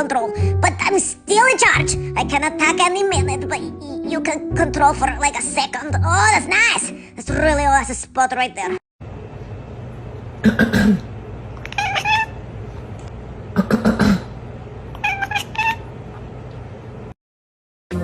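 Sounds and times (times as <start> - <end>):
steady low hum: 9.0 - 17.2
cat meowing: 11.6 - 12.4, 15.0 - 15.9.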